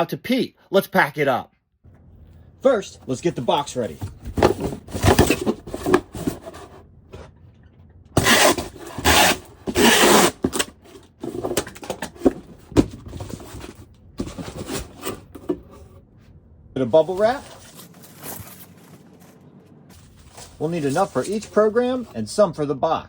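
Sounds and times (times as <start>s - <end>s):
cardboard box being handled: 3.1s - 6.8s, 8.2s - 15.9s, 17.1s - 22.2s
loud rasping strokes: 8.2s - 11.1s.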